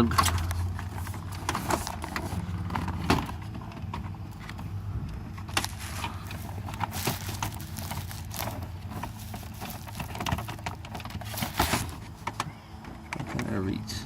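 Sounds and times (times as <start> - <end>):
plastic parts clicking and knocking: 5.4 - 13.5.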